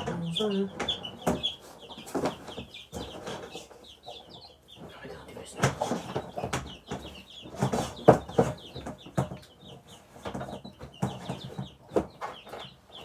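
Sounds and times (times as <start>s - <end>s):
chicks and ducklings peeping: 0.0s - 13.0s
knocks and rustles of handling: 4.8s - 12.8s.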